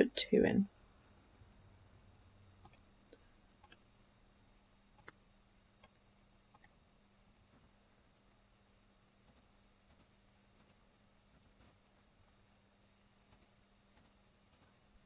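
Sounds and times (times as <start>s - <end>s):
computer mouse clicks: 2.6s - 3.8s, 5.0s - 5.2s, 5.8s - 6.8s.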